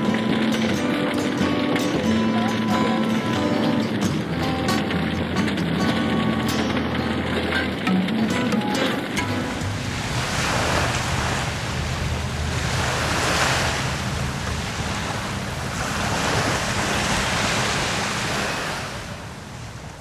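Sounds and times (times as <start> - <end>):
sea waves breaking on shore: 0.0 - 20.0.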